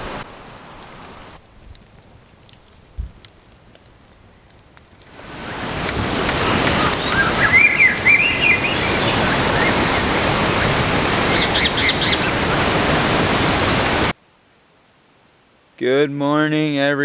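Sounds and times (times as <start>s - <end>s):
heavy rain: 0.0s - 1.4s, 5.1s - 14.8s
bird chirping: 6.8s - 10.0s.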